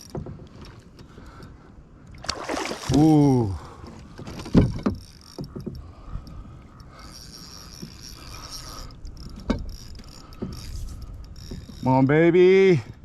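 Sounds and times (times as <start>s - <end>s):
fishing reel whirring: 4.9s - 12.1s.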